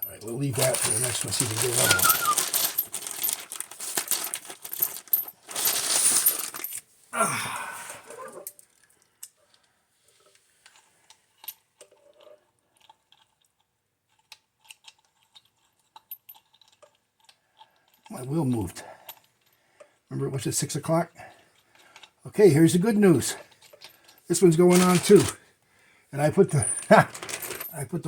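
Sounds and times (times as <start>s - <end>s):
metal parts clattering: 0.0s - 6.8s, 23.6s - 25.4s, 26.4s - 27.8s.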